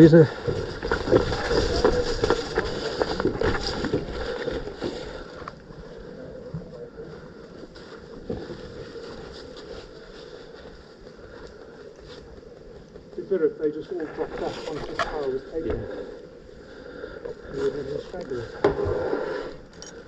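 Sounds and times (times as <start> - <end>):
rustling and handling noise: 0.0 - 5.8.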